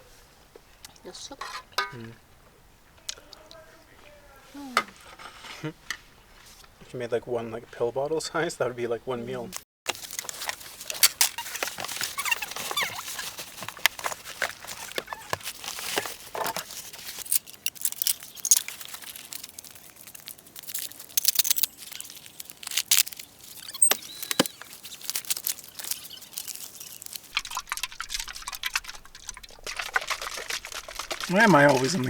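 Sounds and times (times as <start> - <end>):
packaging crinkling: 9.9 - 32.0
utensils scraping food containers: 9.9 - 32.0.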